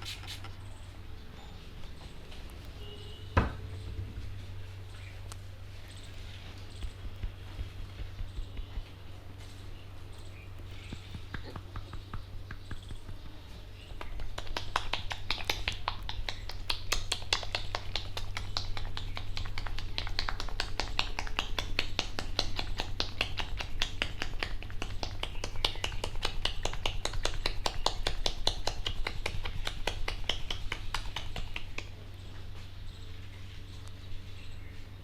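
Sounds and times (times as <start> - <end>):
hands tapping on head: 6.7 - 9.1, 10.6 - 32.0.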